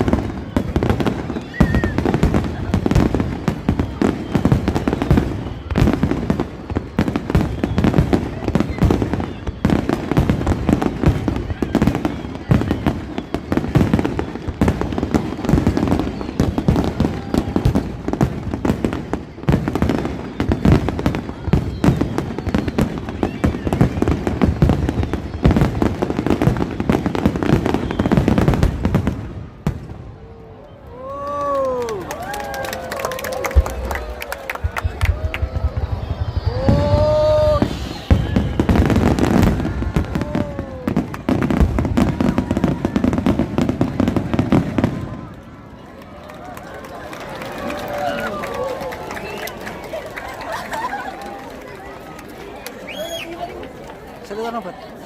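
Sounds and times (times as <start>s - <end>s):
fireworks bangs and crackles: 0.0s - 55.0s
firework bang: 34.8s - 45.2s.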